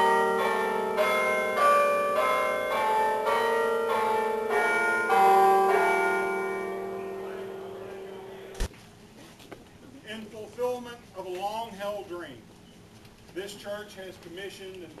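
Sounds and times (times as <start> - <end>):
carillon bells playing notes: 0.0 - 8.3.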